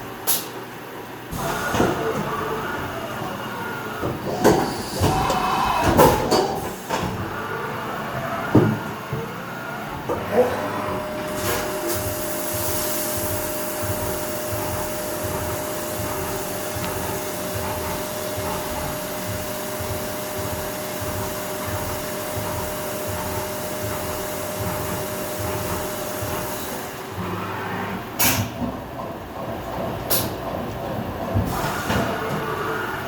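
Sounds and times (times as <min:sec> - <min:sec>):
milling machine whine: 0:01.2 - 0:28.2
milling machine hiss: 0:01.3 - 0:07.3, 0:10.8 - 0:27.0.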